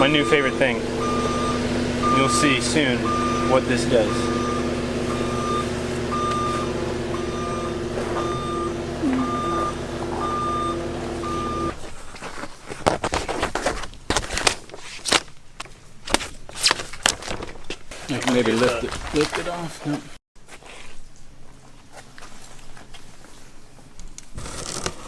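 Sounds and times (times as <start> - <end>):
backup alarm beeping: 0.0 - 11.8
engine humming: 0.0 - 12.2.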